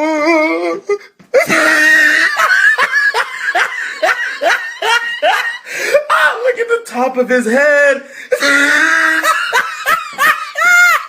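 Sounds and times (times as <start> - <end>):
person laughing: 1.3 - 6.0, 8.3 - 11.0.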